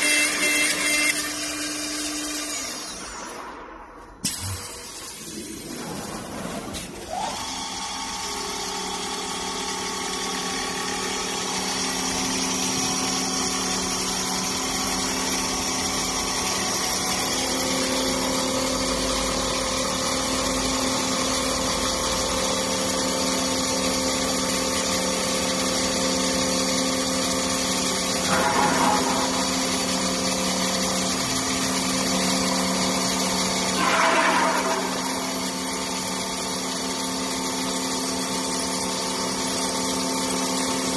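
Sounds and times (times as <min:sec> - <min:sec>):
cnc woodworking machine running: 0:00.0 - 0:03.8, 0:04.6 - 0:40.9
rough machine bursts: 0:28.0 - 0:36.7.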